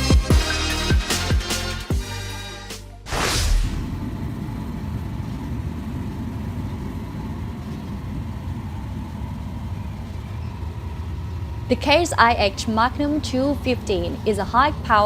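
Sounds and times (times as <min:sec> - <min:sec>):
whooshing sweep: 0:03.1 - 0:04.0
tractor diesel engine rumbling: 0:04.3 - 0:15.0.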